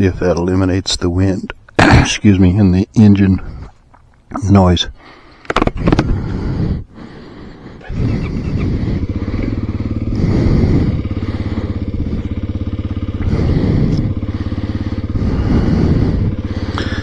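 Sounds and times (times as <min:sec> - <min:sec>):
motorcycle engine revving: 0:07.8 - 0:17.0.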